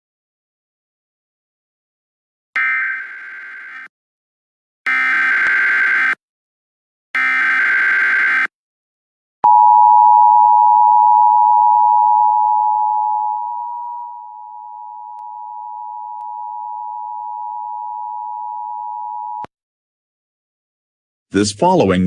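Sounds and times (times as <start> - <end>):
screeching digital header tones: 7.2 - 8.5
two-tone attention signal: 9.4 - 19.5.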